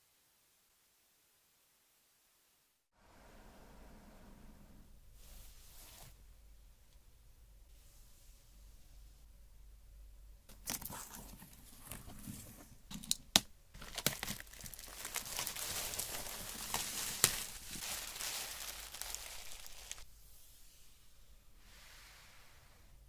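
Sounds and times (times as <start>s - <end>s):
packaging crinkling and tearing: 10.5s - 12.0s, 13.8s - 20.0s.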